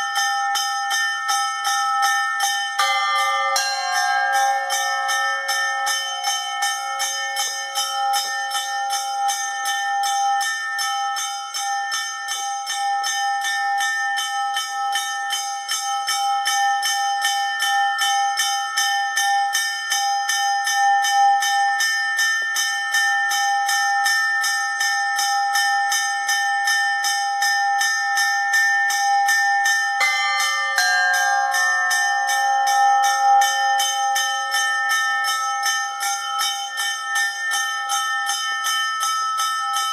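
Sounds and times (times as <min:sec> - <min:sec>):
church bells ringing: 0:00.0 - 0:39.9
lower bell: 0:00.0 - 0:39.9.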